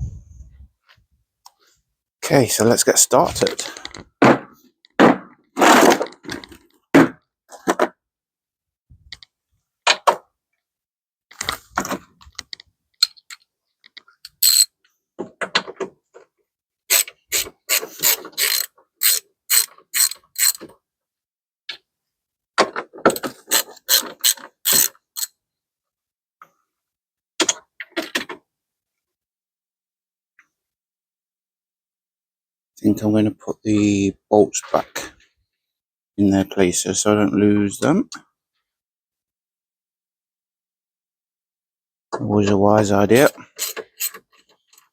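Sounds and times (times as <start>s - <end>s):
socket ratchet clicking: 14.3s - 14.7s, 16.9s - 20.6s, 23.5s - 25.3s, 43.6s - 44.2s.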